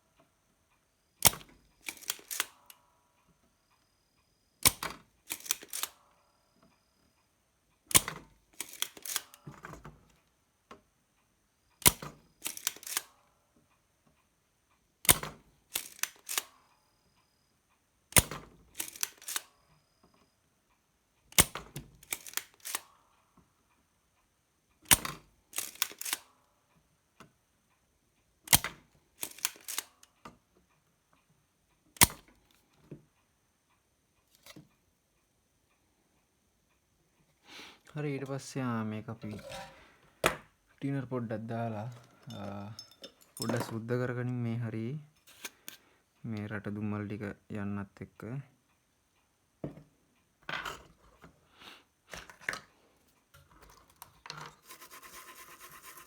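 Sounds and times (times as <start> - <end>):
desoldering pump snapping and clicking: 1.2 - 2.6, 4.6 - 6.0, 7.9 - 10.2, 11.8 - 13.1, 15.0 - 16.6, 18.1 - 19.5, 21.3 - 22.9, 24.8 - 26.3, 28.5 - 30.3, 32.0 - 32.5.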